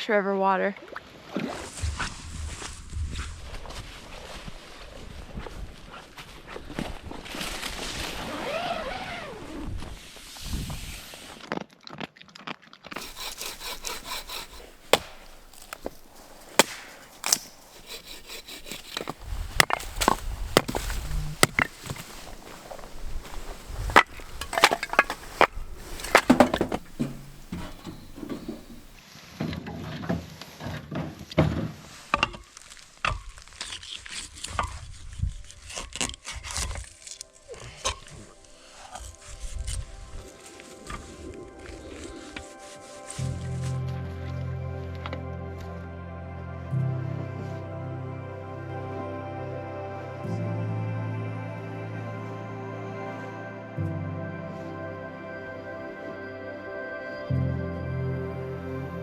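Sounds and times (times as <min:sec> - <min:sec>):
firewood being split: 0:13.0 - 0:29.0.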